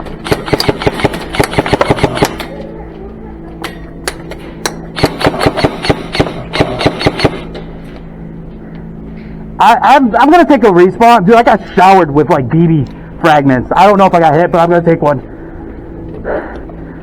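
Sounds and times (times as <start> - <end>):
airsoft gunfire: 0.2 - 2.5, 4.9 - 7.6.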